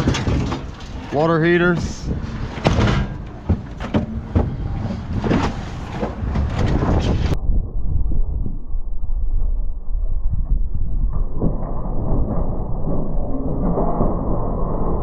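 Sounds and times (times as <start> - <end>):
knocks and clatter: 0.0 - 7.4
wind buffeting microphone: 0.0 - 13.4.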